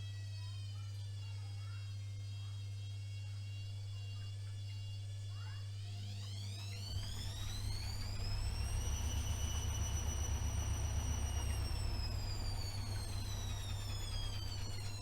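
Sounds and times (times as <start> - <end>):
washing machine drum whining: 6.9 - 15.0
low rumble: 7.0 - 15.0.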